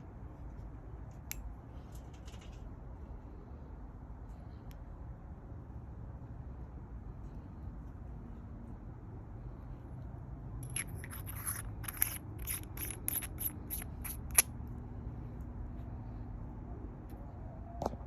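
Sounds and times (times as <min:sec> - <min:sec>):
metal lighter capsule scraping: 0:10.6 - 0:14.5.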